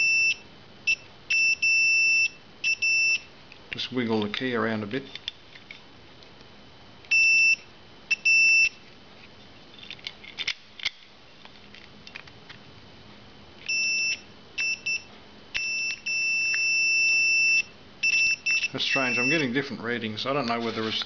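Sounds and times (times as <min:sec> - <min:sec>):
multimeter continuity beeps: 0:00.0 - 0:03.3, 0:07.1 - 0:08.8, 0:13.6 - 0:19.6.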